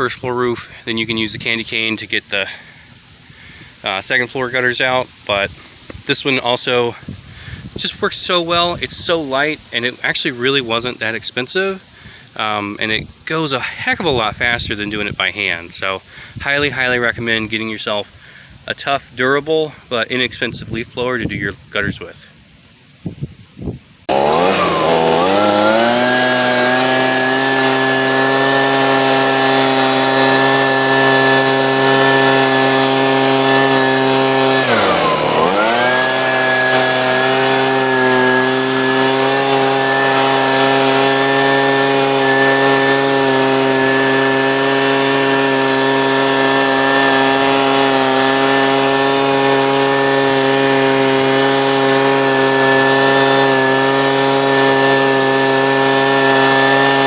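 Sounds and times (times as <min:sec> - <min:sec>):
leaf blower revving: 0:00.7 - 0:12.5, 0:24.0 - 0:57.0.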